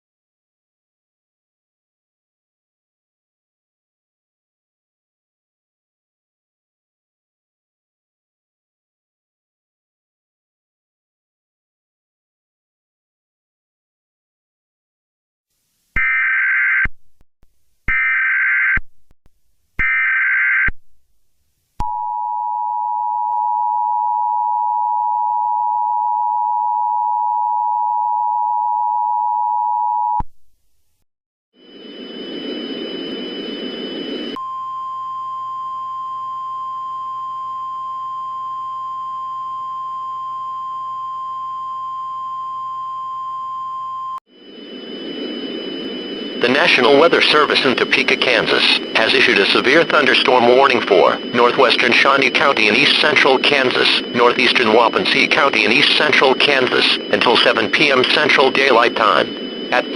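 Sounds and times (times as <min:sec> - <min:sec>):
steady high tone: 0:31.6 - 0:59.9
two-tone attention signal: 0:31.6 - 0:59.9
static burst: 0:45.9 - 0:59.9
screeching data bursts: 0:46.3 - 0:59.9.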